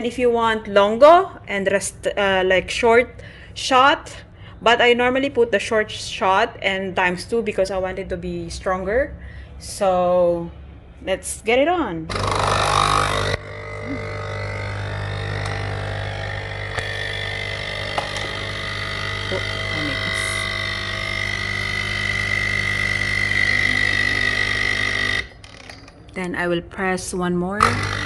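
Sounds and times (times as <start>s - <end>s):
coffee machine pump humming: 12.1s - 25.3s, 27.6s - 28.0s.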